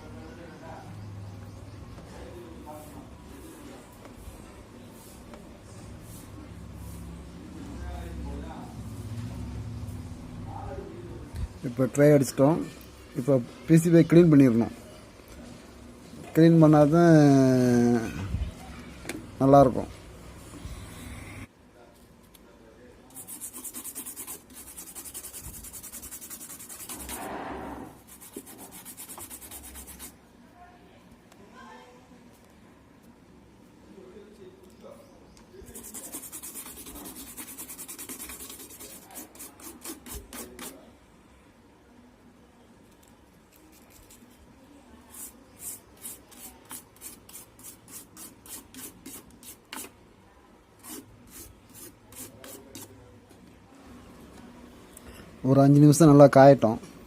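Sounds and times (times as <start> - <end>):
rapid scrubbing on circuit board: 23.1 - 27.3, 28.0 - 30.2, 35.7 - 40.8, 45.1 - 49.9.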